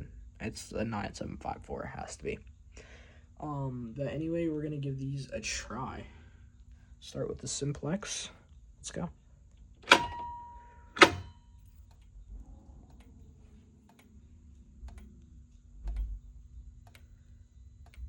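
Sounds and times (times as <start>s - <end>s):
fire alarm pull station clacks: 9.8s - 11.4s
faint ticking: 12.8s - 18.0s.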